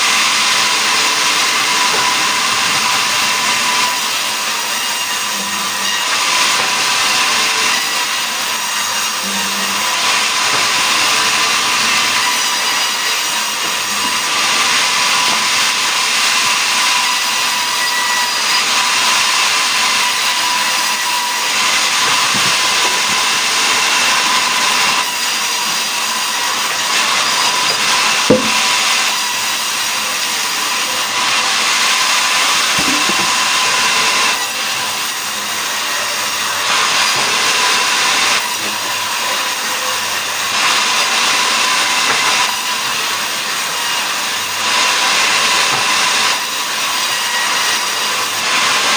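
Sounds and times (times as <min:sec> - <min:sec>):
sawmill saw cutting logs: 0:00.0 - 0:48.9
sharp knock: 0:28.3 - 0:28.8.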